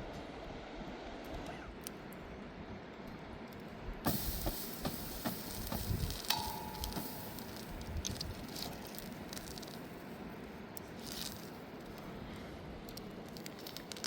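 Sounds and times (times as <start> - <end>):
rattling and rustling handling: 5.3 - 10.1.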